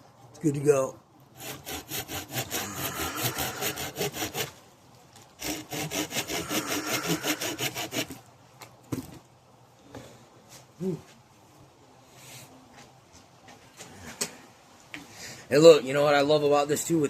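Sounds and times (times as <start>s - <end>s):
saw cutting wood: 1.3s - 4.6s, 5.4s - 8.2s.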